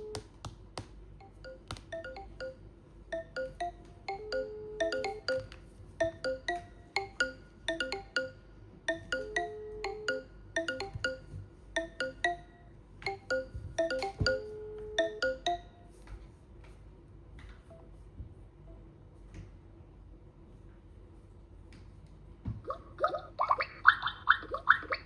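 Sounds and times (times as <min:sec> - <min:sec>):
smartphone ringtone melody: 0:01.2 - 0:15.8.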